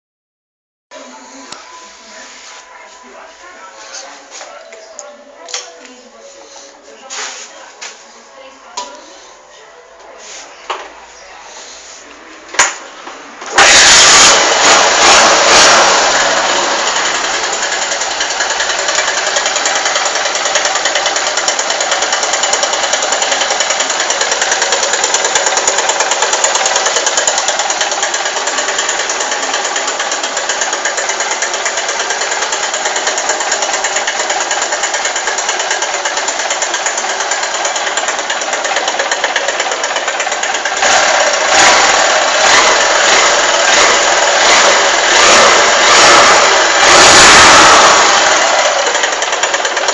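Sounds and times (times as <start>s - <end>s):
motorcycle engine idling with ticking: 13.5s - 49.9s.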